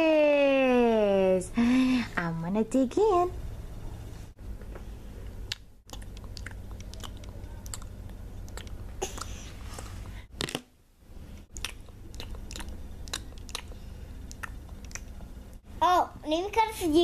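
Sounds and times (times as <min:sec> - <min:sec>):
low steady hum: 0:00.0 - 0:17.0
mouth munching smacks: 0:05.4 - 0:09.9, 0:11.5 - 0:15.6.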